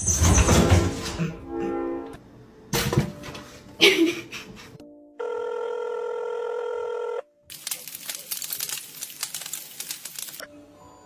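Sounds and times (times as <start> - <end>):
crackling hiss with clicks: 7.6 - 10.4.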